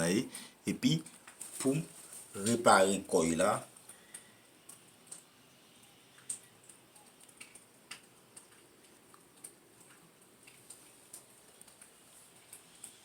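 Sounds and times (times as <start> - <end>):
faint light clicks and ticks: 3.7 - 13.0.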